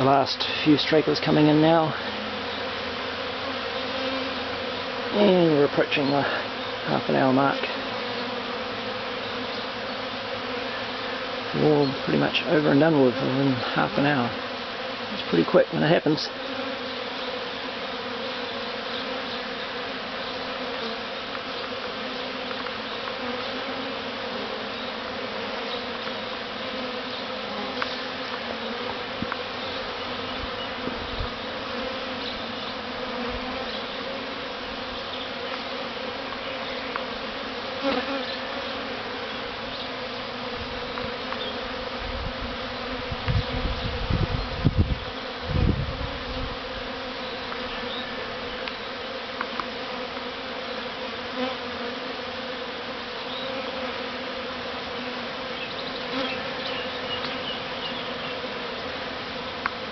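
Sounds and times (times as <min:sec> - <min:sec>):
honeybee swarm buzzing: 0:00.0 - 0:59.9.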